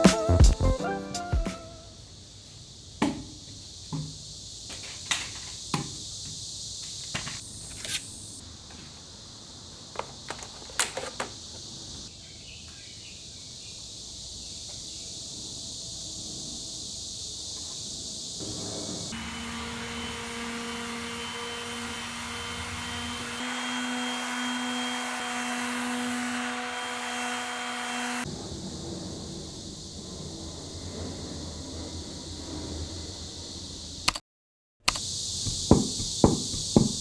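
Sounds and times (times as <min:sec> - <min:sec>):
steady high hiss: 0:00.0 - 0:09.9, 0:11.3 - 0:22.9, 0:35.0 - 0:37.0.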